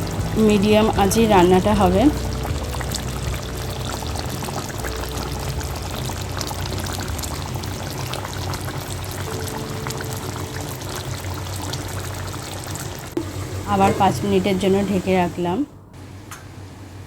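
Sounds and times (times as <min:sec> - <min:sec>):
curry sizzling in a pan: 0:00.0 - 0:15.0.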